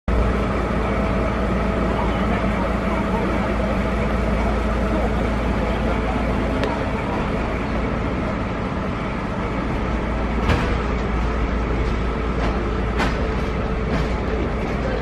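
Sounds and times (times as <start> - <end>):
trolley train rumbling on rails: 0.1 - 15.0.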